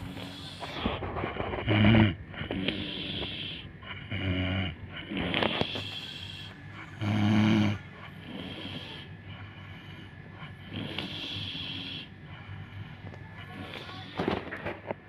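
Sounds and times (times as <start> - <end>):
breathy hiss: 0.0 - 1.0, 2.4 - 4.1, 5.0 - 14.4
woman snoring: 1.7 - 9.1, 10.6 - 12.1.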